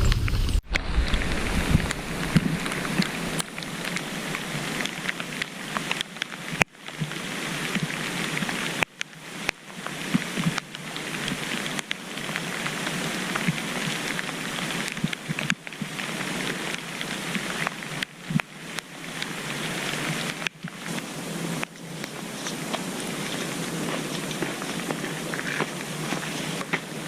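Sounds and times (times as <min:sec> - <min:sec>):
rain falling: 0:00.0 - 0:27.0
raindrops ticking: 0:00.1 - 0:27.0.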